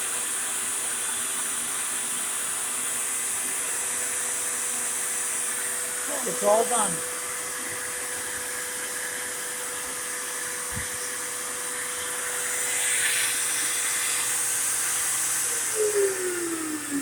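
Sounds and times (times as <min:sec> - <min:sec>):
shop vacuum running: 0:00.0 - 0:17.0
motor spinning down: 0:12.0 - 0:17.0.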